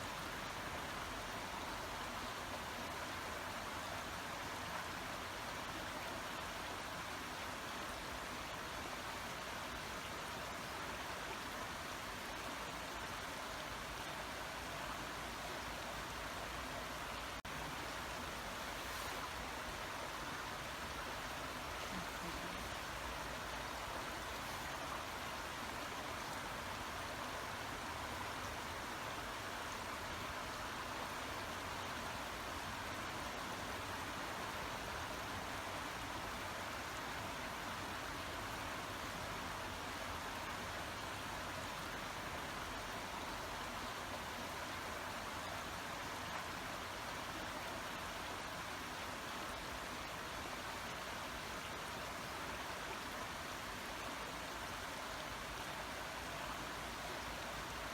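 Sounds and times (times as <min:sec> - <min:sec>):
brook water running: 0:00.0 - 0:57.9.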